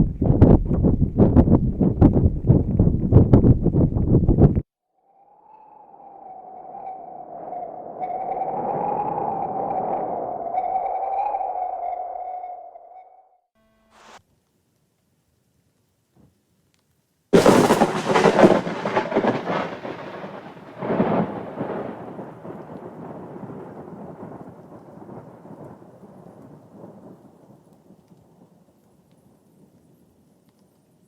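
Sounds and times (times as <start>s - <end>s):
thunder crack and rumble: 0.0s - 4.6s, 17.4s - 28.4s.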